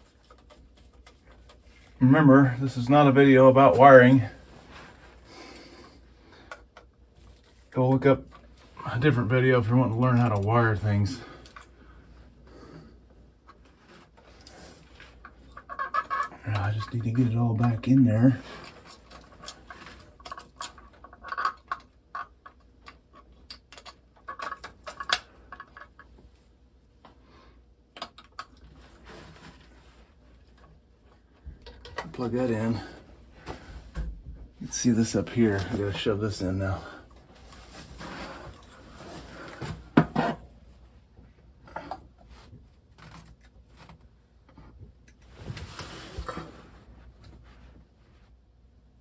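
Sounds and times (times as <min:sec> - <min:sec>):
wires clicking and tapping in box: 0:00.0 - 0:02.0, 0:13.4 - 0:26.4, 0:27.9 - 0:29.7, 0:30.3 - 0:32.4
wires rubbing: 0:13.5 - 0:25.2.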